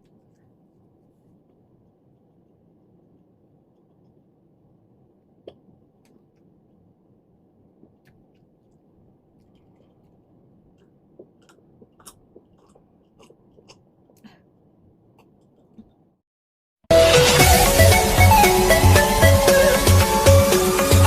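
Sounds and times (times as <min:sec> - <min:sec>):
soft chewing: 0:07.8 - 0:16.0
wet mouth clicks: 0:10.8 - 0:14.3.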